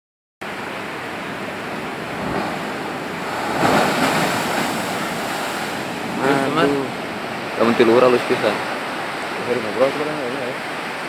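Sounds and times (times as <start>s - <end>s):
ocean surf breaking: 0.4s - 11.0s.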